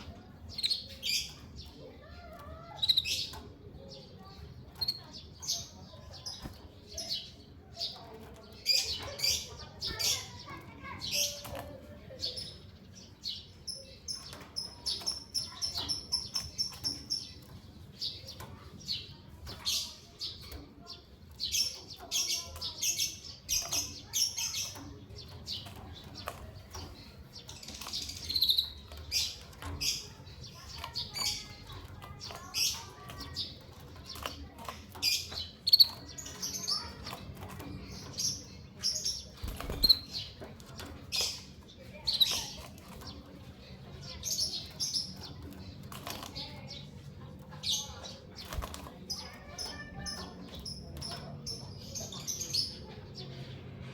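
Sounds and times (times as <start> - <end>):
birds chirping: 0.0 - 53.9
small knocks in cage: 14.1 - 52.0
wing flutters: 39.3 - 41.3.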